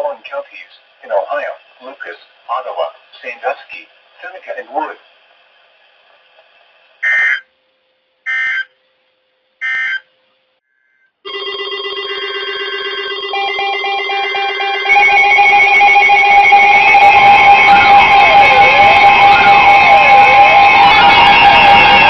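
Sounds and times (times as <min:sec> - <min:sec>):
screeching data tone bursts: 0:07.0 - 0:07.5, 0:08.3 - 0:08.7, 0:09.6 - 0:10.0, 0:13.3 - 0:22.0
electronic alarm tones: 0:09.6 - 0:10.0, 0:10.8 - 0:22.0
rapid beeping: 0:11.3 - 0:22.0.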